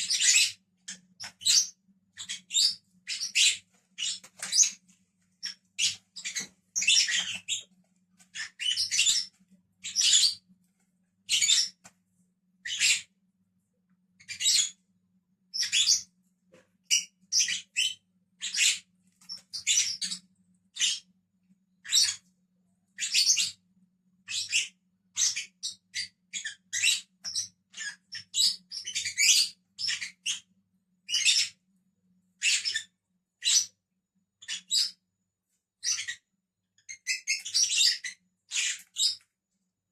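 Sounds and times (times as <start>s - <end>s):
birds giving shrill chirps: 0.0s - 4.8s, 5.4s - 7.7s, 8.3s - 10.4s, 11.3s - 11.8s, 12.6s - 13.1s, 15.6s - 16.1s, 16.9s - 20.2s, 24.3s - 30.5s, 36.9s - 39.2s.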